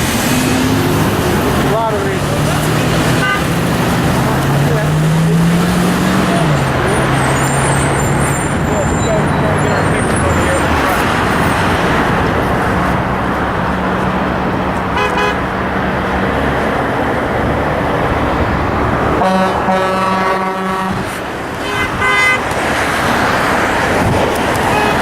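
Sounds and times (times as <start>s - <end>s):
freeway traffic: 0.0s - 25.0s
vehicle horns honking: 2.7s - 10.8s, 14.8s - 15.6s, 19.2s - 22.6s, 24.6s - 25.0s.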